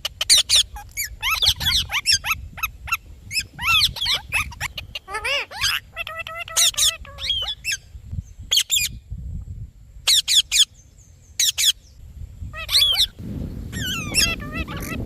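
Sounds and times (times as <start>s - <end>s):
parakeet squawking: 0.2s - 7.8s, 12.6s - 15.0s.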